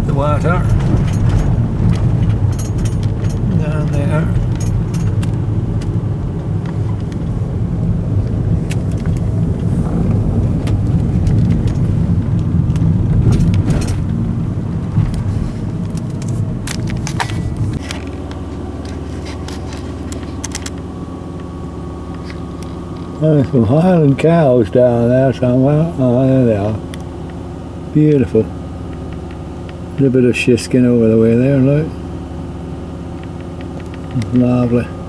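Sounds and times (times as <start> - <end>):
light rattles and clicks: 0.0 - 24.3, 33.1 - 35.0
car engine and road rumble: 0.0 - 35.0.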